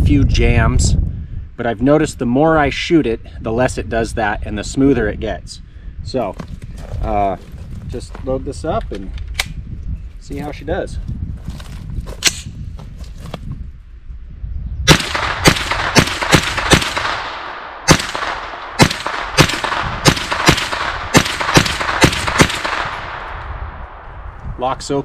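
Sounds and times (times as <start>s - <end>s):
gunshots with ringing echo: 14.9s - 24.2s.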